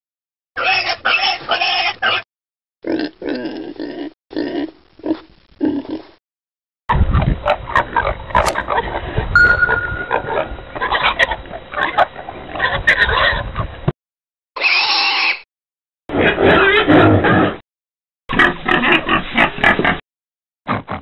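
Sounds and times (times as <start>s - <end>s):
pigs grunting: 2.8s - 6.2s, 18.3s - 20.0s, 20.7s - 21.0s.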